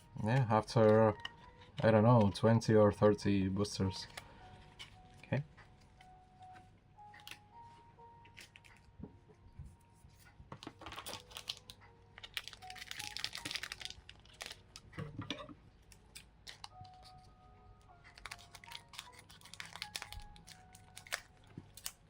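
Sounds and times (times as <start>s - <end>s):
quiet background music: 0.0s - 22.0s
foil wrapper tearing and crinkling: 10.7s - 15.0s, 16.1s - 17.2s, 18.1s - 22.0s.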